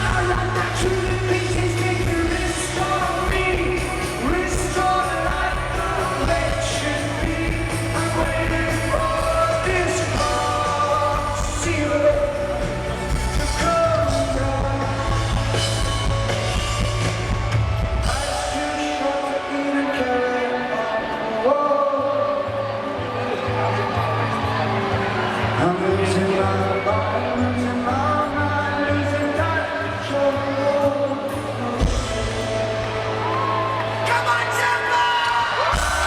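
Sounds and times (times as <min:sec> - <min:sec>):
heavy bass: 0:00.0 - 0:18.8, 0:35.6 - 0:36.0
live rock band playing: 0:00.0 - 0:21.4, 0:31.3 - 0:34.8, 0:35.5 - 0:36.0
sung vocals: 0:00.0 - 0:23.2, 0:25.4 - 0:36.0.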